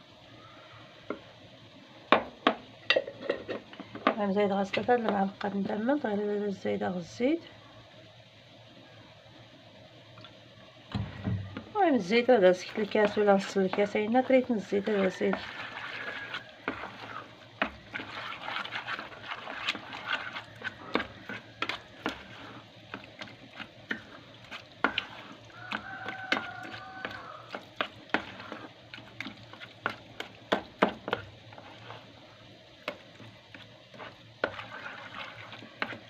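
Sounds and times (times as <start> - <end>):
spoon scraping against a pot: 12.5 - 32.2, 32.8 - 36.0.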